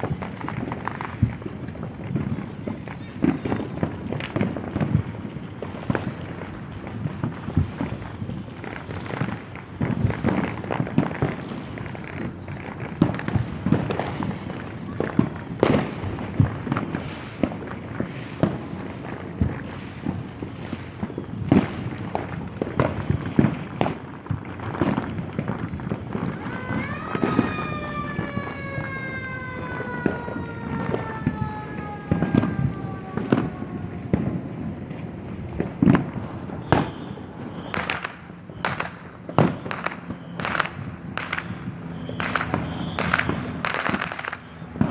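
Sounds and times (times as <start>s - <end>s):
fireworks crackling and banging: 0.0s - 44.9s.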